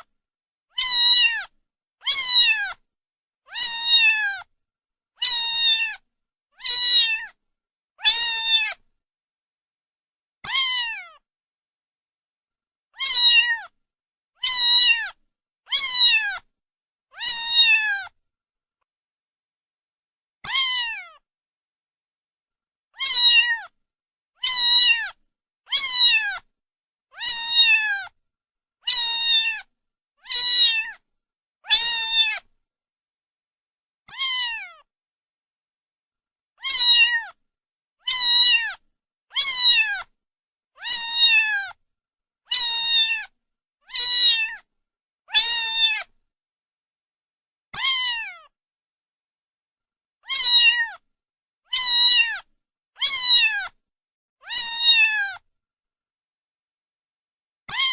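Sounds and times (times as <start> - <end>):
cat meowing: 0.7 - 2.8, 3.5 - 4.5, 5.2 - 6.0, 6.6 - 7.4, 8.0 - 8.8, 10.4 - 11.2, 13.0 - 13.8, 14.4 - 16.5, 17.1 - 18.2, 20.4 - 21.2, 23.0 - 23.8, 24.4 - 26.5, 27.1 - 28.2, 28.8 - 31.0, 31.6 - 32.5, 34.0 - 34.9, 36.6 - 37.4, 38.0 - 40.1, 40.8 - 41.8, 42.5 - 43.3, 43.9 - 44.7, 45.3 - 46.1, 47.8 - 48.5, 50.2 - 51.0, 51.7 - 53.8, 54.4 - 55.4, 57.7 - 57.9.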